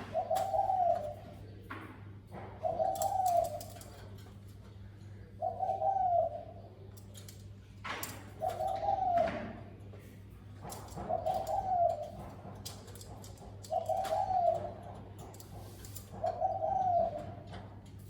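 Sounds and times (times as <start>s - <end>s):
dove cooing: 0.0s - 1.6s, 2.3s - 9.9s, 10.6s - 18.0s.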